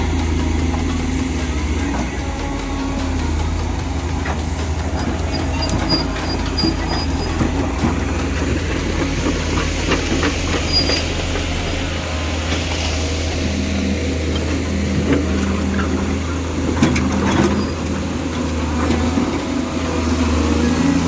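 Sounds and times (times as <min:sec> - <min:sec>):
metallic clanks and knocks: 0:00.0 - 0:13.0
excavator diesel engine running: 0:00.0 - 0:21.0
high-pitched metal squeals: 0:00.0 - 0:21.0.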